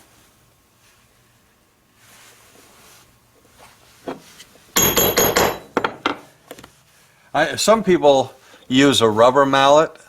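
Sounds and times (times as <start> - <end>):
hammer tapping metal punch: 4.8 - 6.2.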